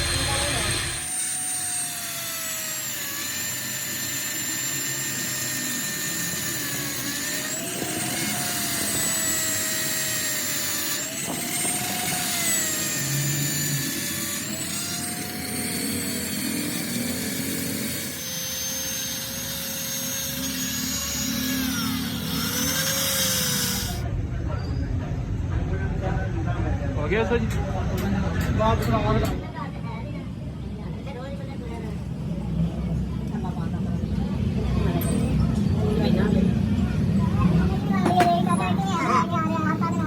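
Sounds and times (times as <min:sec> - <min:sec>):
power tool whining: 0:00.0 - 0:24.1, 0:34.1 - 0:40.0.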